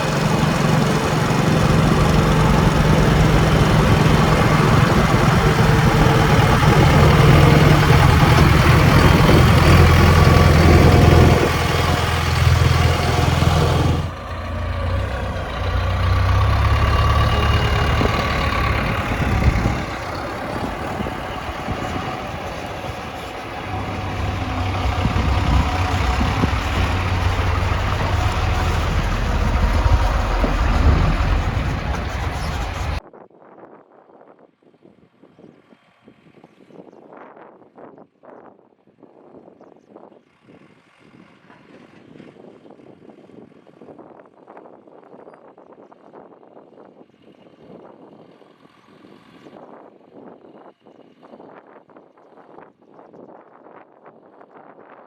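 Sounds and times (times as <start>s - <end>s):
diesel engine working: 0.0s - 33.0s.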